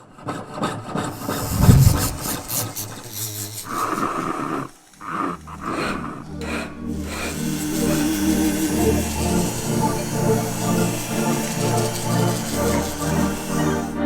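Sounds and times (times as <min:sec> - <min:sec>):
raspy scraping: 0:00.8 - 0:14.0
steady tool whine: 0:01.0 - 0:14.0
low swell: 0:01.2 - 0:02.7.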